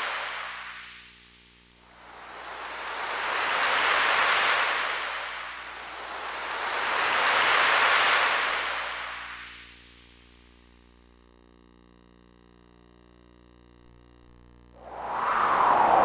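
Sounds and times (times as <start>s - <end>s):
synthesized surf noise: 1.8s - 9.8s, 14.8s - 16.0s.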